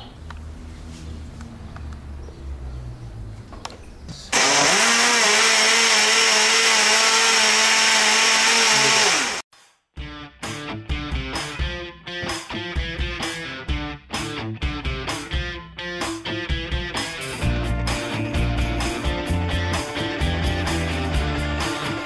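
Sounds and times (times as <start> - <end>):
electric blender whirring: 4.4 - 9.4.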